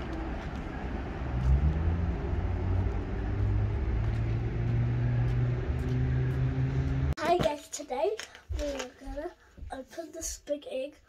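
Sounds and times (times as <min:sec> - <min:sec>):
vehicle engine rumbling: 0:00.0 - 0:07.2.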